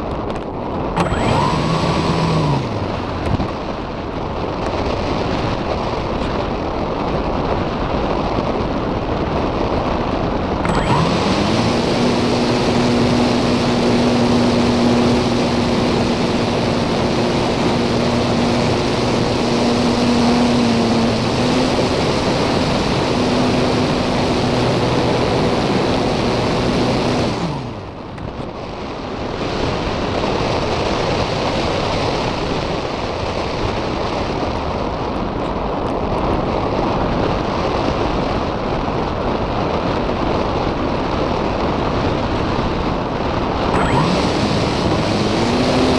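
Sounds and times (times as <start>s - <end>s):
electric motor and propeller hum: 0.0s - 32.4s, 42.5s - 45.9s
wind rushing over camera: 0.0s - 45.9s.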